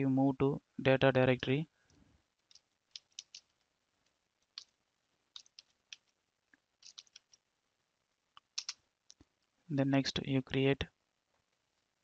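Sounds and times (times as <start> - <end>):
keyboard keystrokes: 2.5 - 3.5, 6.8 - 7.3, 8.6 - 8.8.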